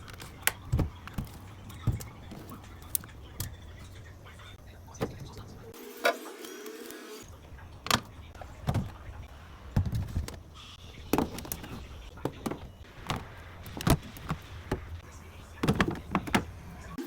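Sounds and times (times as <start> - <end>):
containers knocking and clicking: 0.0 - 3.8, 11.1 - 15.0, 15.6 - 16.6.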